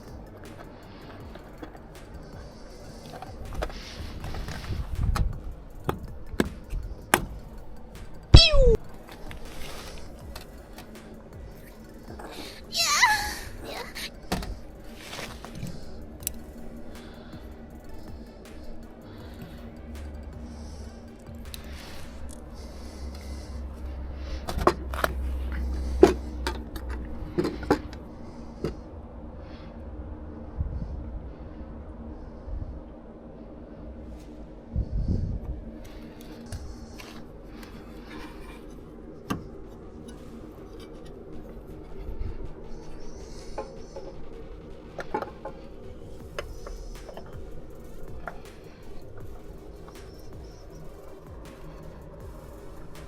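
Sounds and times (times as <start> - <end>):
hand tools clicking and knocking: 0.0 - 23.4
steady low hum: 0.0 - 53.0.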